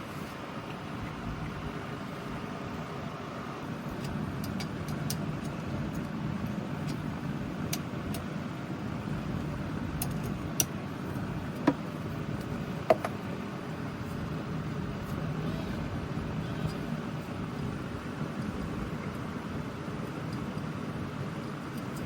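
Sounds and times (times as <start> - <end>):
low background rumble: 0.0 - 22.0
light clicks of hand tools: 10.0 - 10.8.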